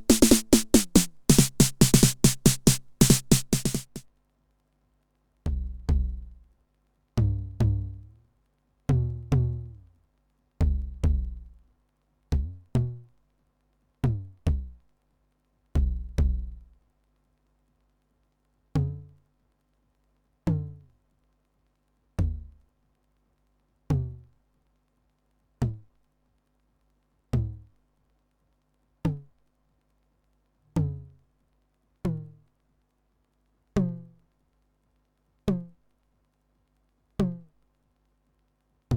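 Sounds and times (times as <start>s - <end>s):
drum machine low pitched drum hits: 0.0s - 4.0s.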